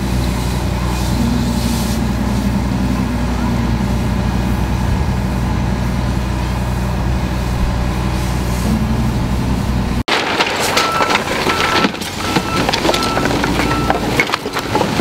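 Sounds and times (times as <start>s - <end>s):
heavy truck engine running: 0.0s - 15.0s
clattering and crackling: 10.0s - 15.0s
reversing alarm beeps: 10.8s - 14.1s.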